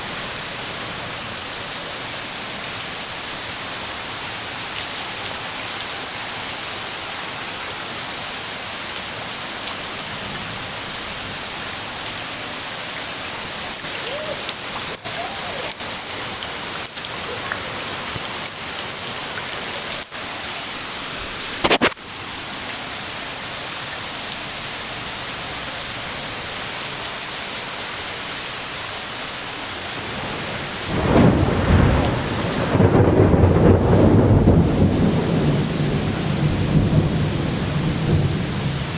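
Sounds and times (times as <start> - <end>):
steady rain falling: 0.0 - 38.9
thunder rumbling: 30.1 - 38.9.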